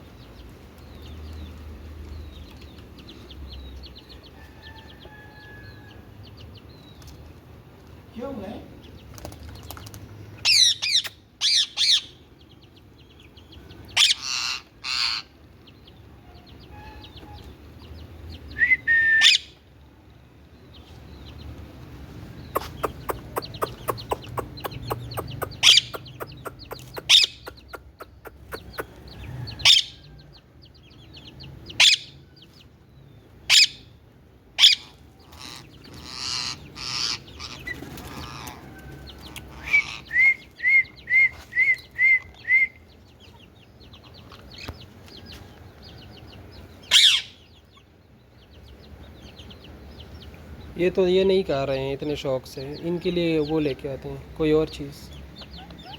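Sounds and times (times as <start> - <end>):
parakeet calling: 10.4 - 17.5, 18.6 - 19.6, 22.4 - 30.1, 31.1 - 32.2, 33.4 - 33.9, 34.6 - 44.9, 46.7 - 47.9.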